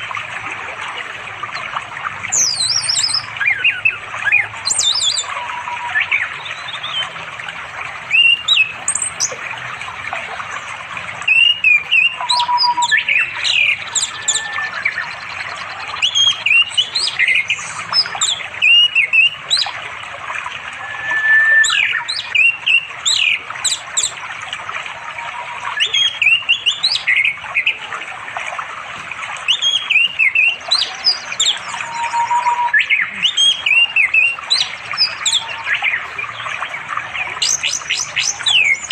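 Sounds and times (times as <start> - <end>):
stream flowing: 0.0 - 38.9
bird singing whistles and chirps: 2.3 - 7.2, 8.1 - 9.4, 11.3 - 19.8, 20.4 - 24.2, 25.1 - 27.8, 29.4 - 38.9.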